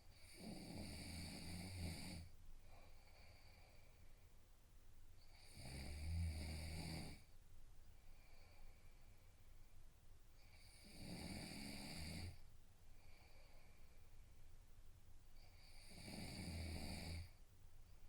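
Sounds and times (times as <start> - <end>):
man snoring: 0.2 - 2.3, 5.3 - 7.2, 10.5 - 12.4, 15.6 - 17.3
faint breath: 2.2 - 4.4, 7.9 - 9.8, 12.3 - 14.6.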